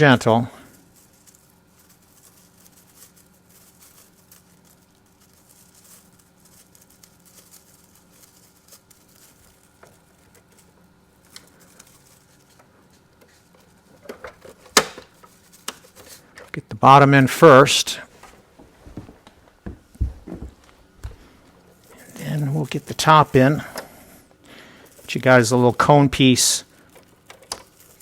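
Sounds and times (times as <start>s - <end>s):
faint steady hum: 0.0s - 28.0s
plastic rustling and ticking: 0.8s - 16.6s, 24.8s - 28.0s.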